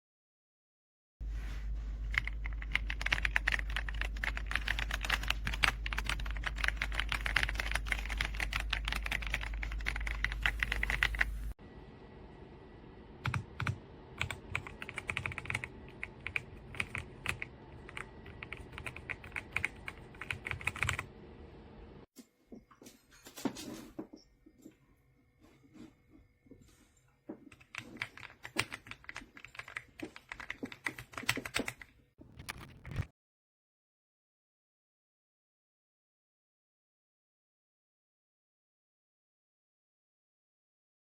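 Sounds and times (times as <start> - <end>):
steady low hum: 1.2 - 22.0.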